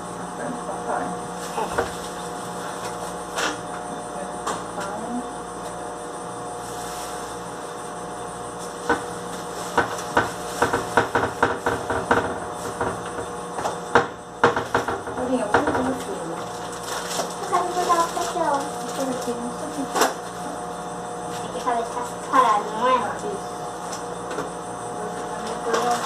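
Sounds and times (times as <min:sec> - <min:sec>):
steady hum: 0:00.0 - 0:26.0
food containers knocking on shelves: 0:09.7 - 0:16.0.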